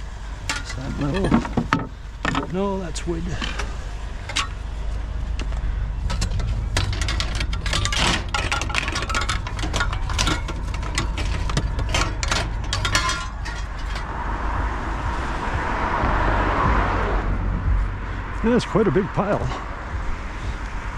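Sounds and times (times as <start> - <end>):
junk clattering and knocking: 0.0 - 4.7, 5.3 - 14.3
steady low rumble: 0.0 - 20.9.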